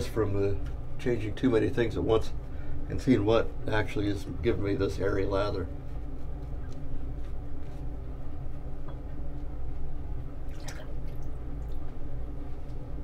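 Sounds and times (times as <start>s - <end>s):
steady low hum: 0.0s - 13.0s
water drips: 10.5s - 11.9s.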